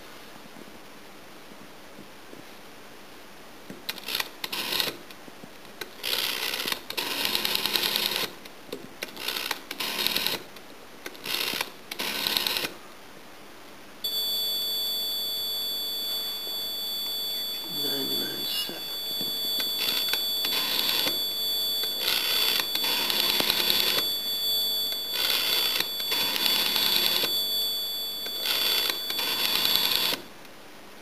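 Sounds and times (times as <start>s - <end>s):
rotary dial whirring and clicking: 11.1s - 12.7s, 19.5s - 27.5s, 28.2s - 30.2s
electronic alarm buzzer: 14.0s - 30.3s.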